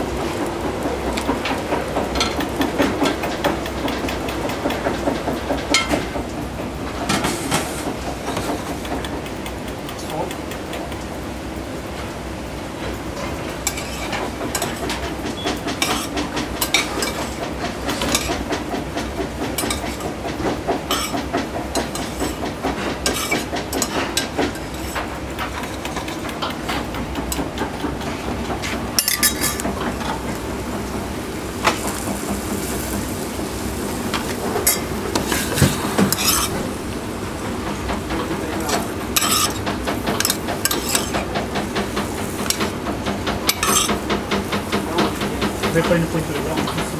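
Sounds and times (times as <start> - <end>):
steady background noise: 0.0 - 46.9
utensils and pans clinking: 13.6 - 18.6, 19.4 - 30.3, 34.1 - 36.8, 37.9 - 46.9.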